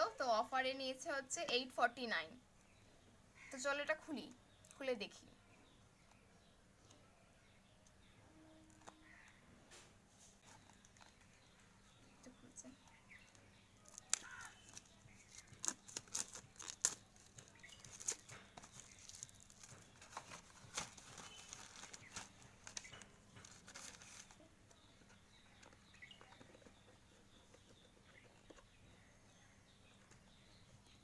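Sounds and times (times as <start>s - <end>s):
packaging crinkling and tearing: 13.3s - 24.4s.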